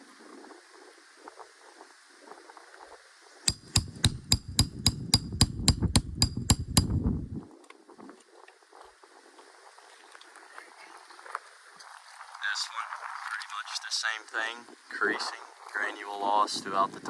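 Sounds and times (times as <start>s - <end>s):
hammer tapping on metal: 3.5s - 7.0s.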